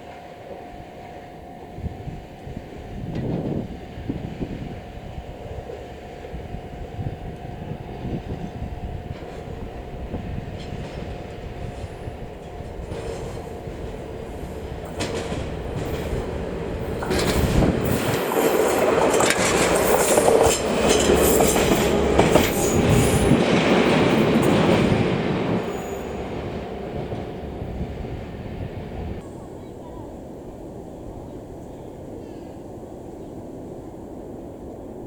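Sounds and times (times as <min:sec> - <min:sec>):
diesel locomotive passing: 0:00.0 - 0:35.0
train wheels clicking over rails: 0:08.0 - 0:28.4.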